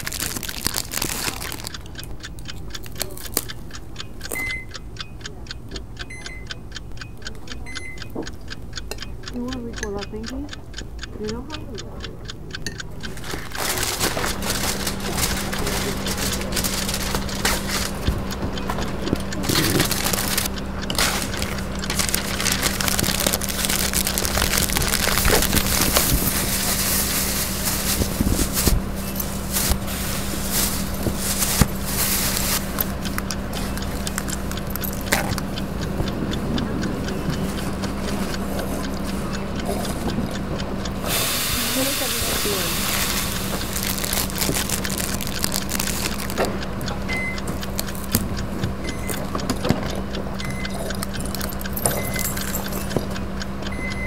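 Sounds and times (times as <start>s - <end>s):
packaging crinkling and rustling: 0.0s - 1.8s, 13.2s - 17.4s, 19.8s - 21.2s, 21.9s - 28.7s, 42.9s - 46.4s
steady low hum: 0.0s - 54.0s.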